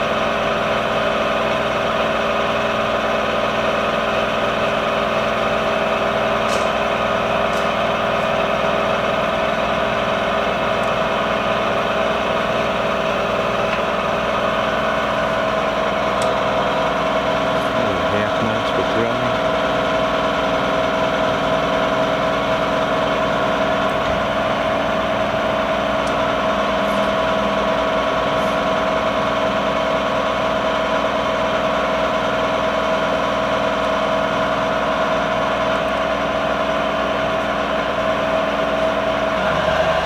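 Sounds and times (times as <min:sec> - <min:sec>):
lathe running with mechanical hum: 0:00.0 - 0:40.0
spindle whine: 0:07.4 - 0:30.0.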